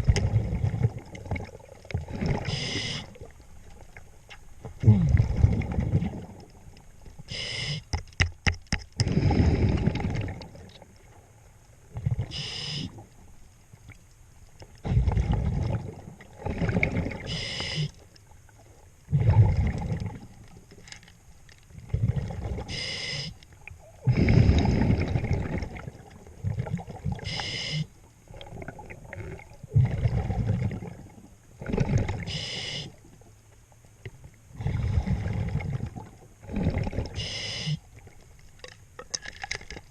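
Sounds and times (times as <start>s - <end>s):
exhaled bubbles rumbling: 0.0s - 7.4s, 9.0s - 14.0s, 14.6s - 20.8s, 21.7s - 22.9s, 23.5s - 27.5s, 28.2s - 33.2s, 33.9s - 39.9s
hissing regulator inhale: 2.4s - 3.2s, 7.3s - 7.9s, 12.3s - 13.0s, 17.2s - 18.0s, 22.7s - 23.4s, 27.2s - 27.9s, 32.3s - 33.0s, 37.2s - 37.8s.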